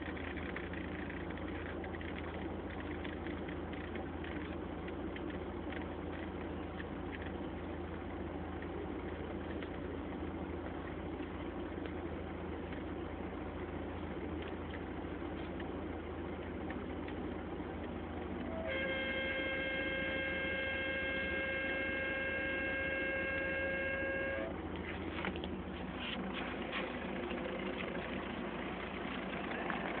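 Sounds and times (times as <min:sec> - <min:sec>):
car engine running: 0:00.0 - 0:30.0
steady high tone: 0:18.4 - 0:24.6.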